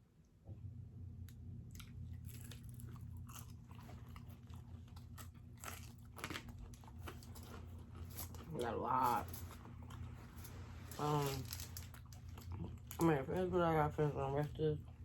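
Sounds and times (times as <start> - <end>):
steady low hum: 0.0 - 15.0
close chewing and biting food: 1.6 - 10.4, 11.4 - 13.1.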